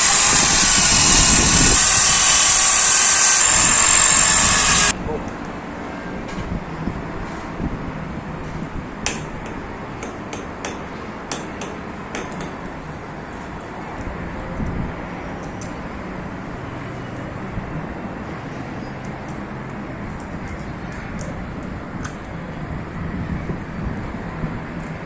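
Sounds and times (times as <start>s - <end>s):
sharp clicks: 0.0s - 4.9s
steady background noise: 0.0s - 25.0s.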